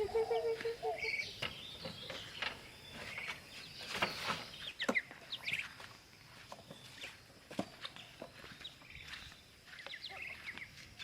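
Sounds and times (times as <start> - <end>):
chickens clucking and chirping: 0.0 - 11.0.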